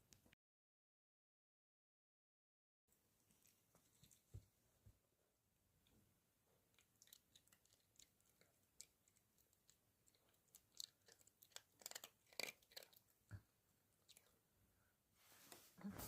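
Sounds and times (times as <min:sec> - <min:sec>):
dog chewing food: 0:10.0 - 0:13.1.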